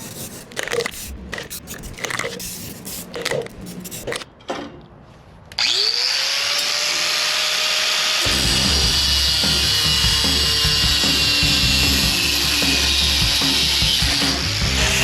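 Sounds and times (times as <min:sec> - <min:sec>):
hand sanding strokes: 0:00.0 - 0:04.2
power tool motor whine: 0:05.6 - 0:15.0.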